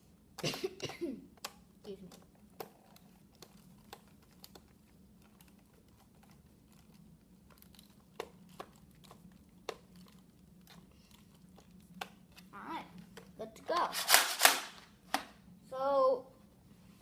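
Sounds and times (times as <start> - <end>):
low steady hum: 0.0 - 17.0
plastic toy blaster clicks: 13.8 - 15.2.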